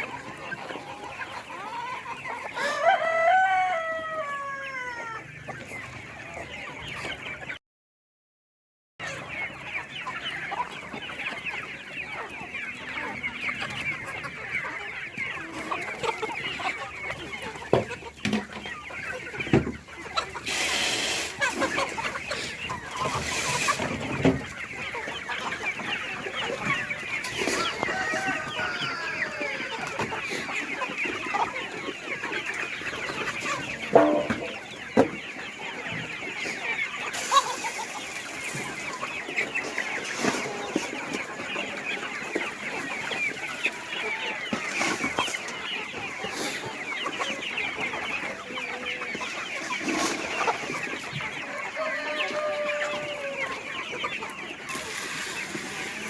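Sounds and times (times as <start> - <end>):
chickens clucking: 0.0 - 7.6, 9.0 - 56.0
rooster crowing: 2.6 - 5.2, 27.4 - 29.8, 51.5 - 53.5.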